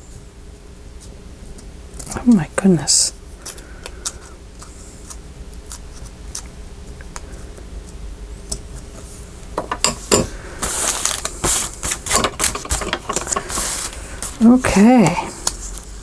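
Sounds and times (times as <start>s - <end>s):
rustling and clatter: 9.6s - 16.0s.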